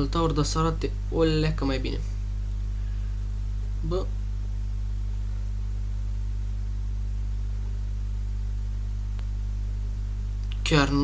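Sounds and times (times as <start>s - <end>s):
electrical mains hum: 0.0s - 11.0s
light hiss: 0.3s - 10.9s
faint click: 2.4s - 2.7s, 9.1s - 9.4s, 10.4s - 10.6s.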